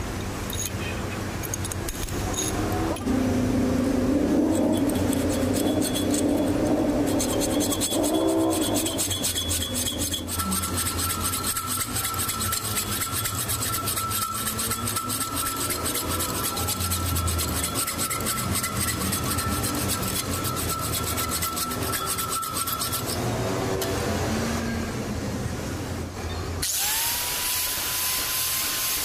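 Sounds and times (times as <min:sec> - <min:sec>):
high whine: 0:02.2 - 0:23.9
tool scraping steel: 0:04.2 - 0:23.9.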